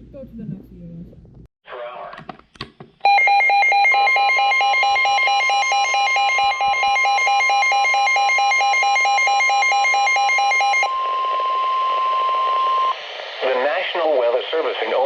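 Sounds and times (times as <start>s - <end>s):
rapid two-pitch alarm beeping: 3.1s - 13.0s.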